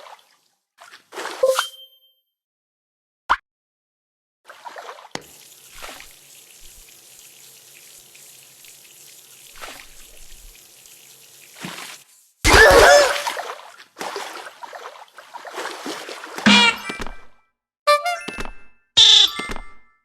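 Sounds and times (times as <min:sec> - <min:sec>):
water trickling: 0:05.2 - 0:16.4.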